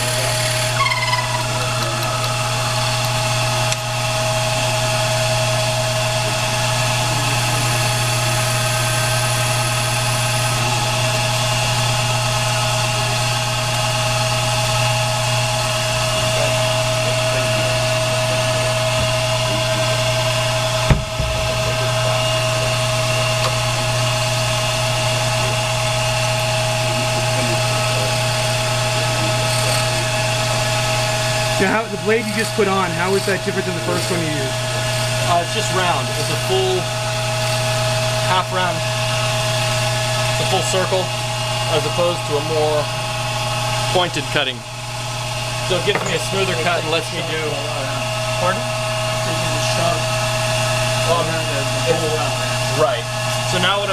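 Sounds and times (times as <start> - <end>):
lathe humming: 0.0 - 53.9
sharp knock: 20.8 - 21.8.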